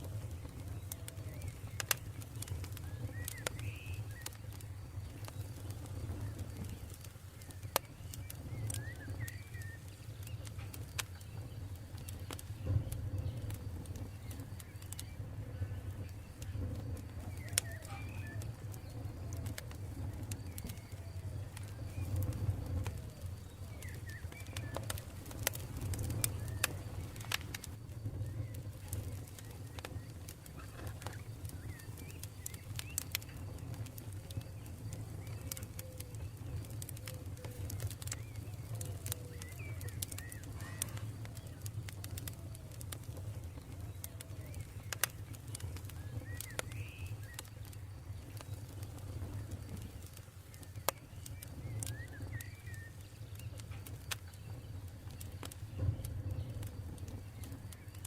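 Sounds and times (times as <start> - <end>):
campfire crackling and popping: 0.0 - 58.0
faint birds calling: 0.1 - 58.0.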